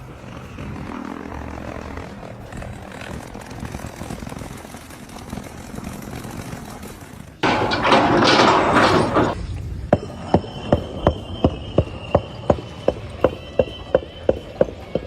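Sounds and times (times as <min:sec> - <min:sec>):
engine rumbling: 0:07.4 - 0:09.5.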